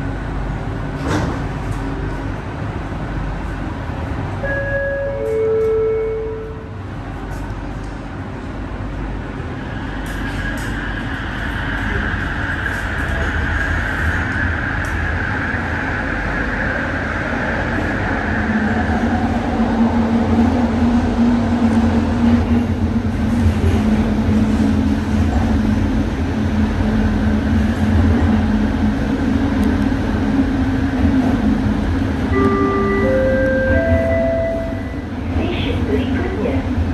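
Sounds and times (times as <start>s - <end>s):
train wheels rumbling on track: 0.0s - 36.9s.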